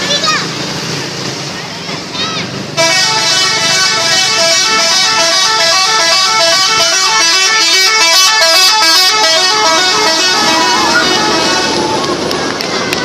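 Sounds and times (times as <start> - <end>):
musical air horn melody: 2.8 - 11.8.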